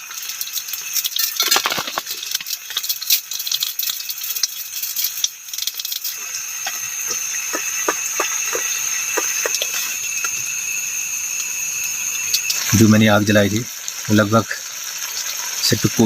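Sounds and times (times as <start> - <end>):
food hissing and popping: 0.0 - 16.0
noodles clattering into pan: 0.5 - 6.8.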